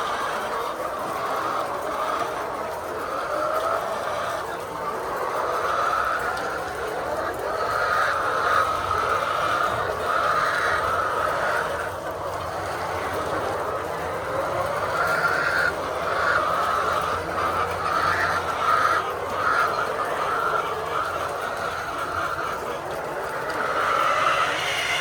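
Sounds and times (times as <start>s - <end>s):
hens clucking and squawking: 0.0s - 25.0s.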